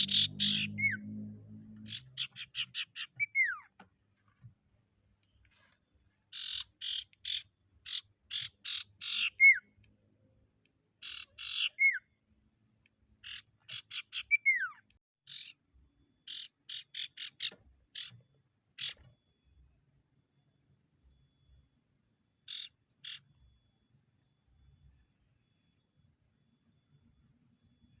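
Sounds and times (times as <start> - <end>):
songbird rasping calls: 0.0 - 3.8, 6.3 - 9.8, 11.0 - 12.0, 13.2 - 15.6, 16.3 - 18.2, 18.8 - 19.1, 22.5 - 23.3.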